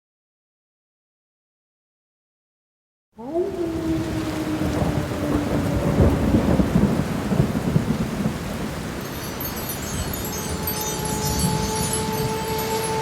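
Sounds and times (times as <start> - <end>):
low rolling thunder: 3.2 - 13.0
steady rain: 3.2 - 13.0.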